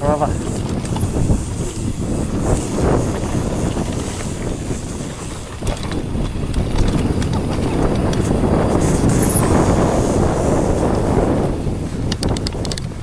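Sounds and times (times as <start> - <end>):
wind buffeting microphone: 0.0 - 13.0
bike knocks and rattles: 0.3 - 13.0.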